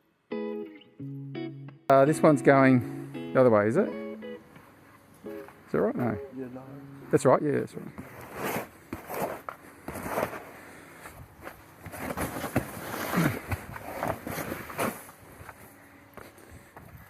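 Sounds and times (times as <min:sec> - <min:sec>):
artificial turf rustling and scraping: 0:07.1 - 0:16.9
footsteps: 0:07.8 - 0:17.0.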